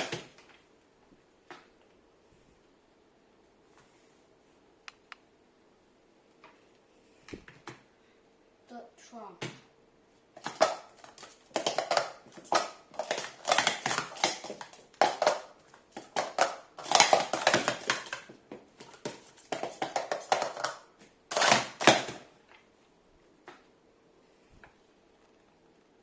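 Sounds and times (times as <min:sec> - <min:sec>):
plastic cups clattering: 0:00.0 - 0:00.6, 0:10.4 - 0:22.3.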